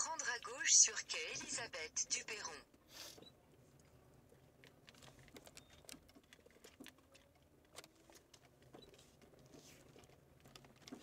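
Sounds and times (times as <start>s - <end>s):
soft ticks and rustles: 3.6s - 11.0s.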